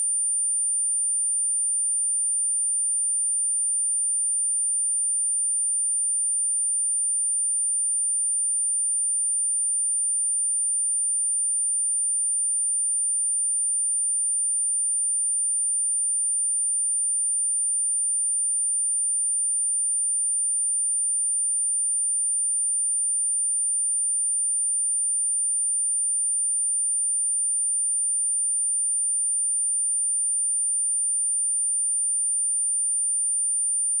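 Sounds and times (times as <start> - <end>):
high-pitched sine test tone: 30.0 - 34.0.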